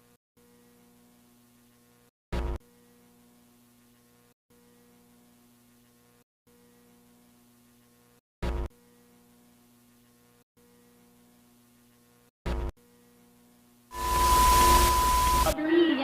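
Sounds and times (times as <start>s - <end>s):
electrical hum: 13.9s - 15.6s
short loud buzz: 13.9s - 15.6s.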